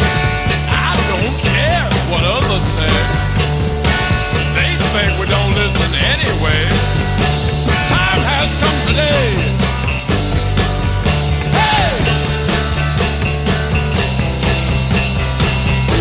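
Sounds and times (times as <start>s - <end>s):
rock music: 0.0s - 16.0s
steady drum beat: 0.0s - 16.0s.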